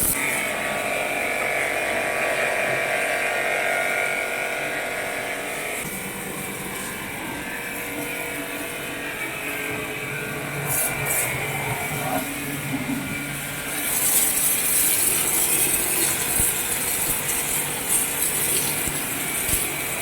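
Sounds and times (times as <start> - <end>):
pressure washer whining hum: 0.0 - 20.0.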